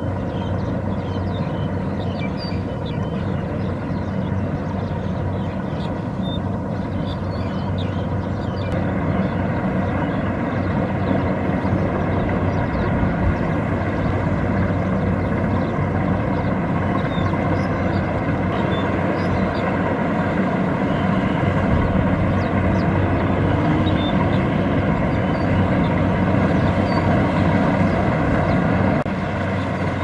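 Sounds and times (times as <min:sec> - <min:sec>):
combine harvester diesel engine: 0:00.0 - 0:30.0.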